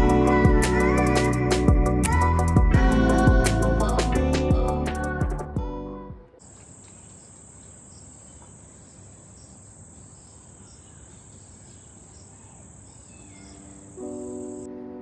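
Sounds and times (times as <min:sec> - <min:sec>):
insects trilling: 0:06.4 - 0:14.7.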